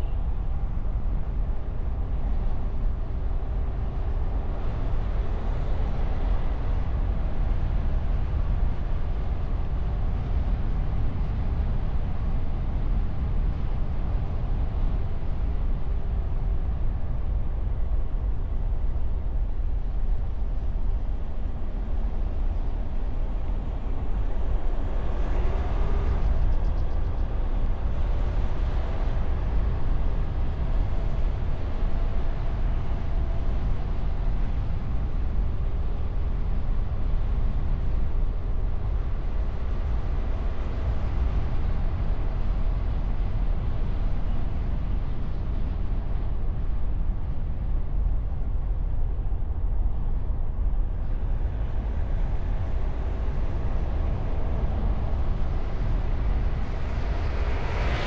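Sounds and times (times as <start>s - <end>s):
wind and road noise: 0.0s - 58.0s.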